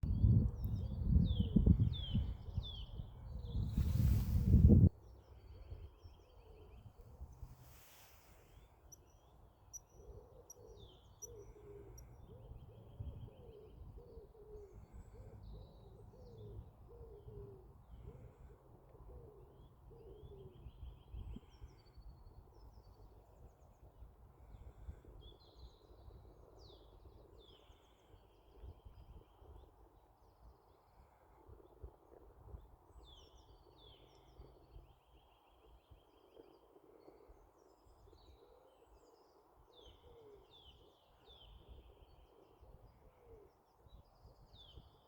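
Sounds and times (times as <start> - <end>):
low repeated bird calls: 0.0 - 23.1.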